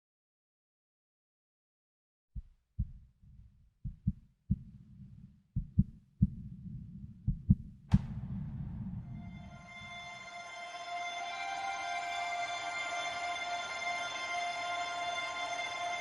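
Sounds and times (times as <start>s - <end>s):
muffled low drum thumps: 2.4s - 9.6s
dull rumble: 3.9s - 9.9s
sharp hit with hissing wash: 8.0s - 10.4s.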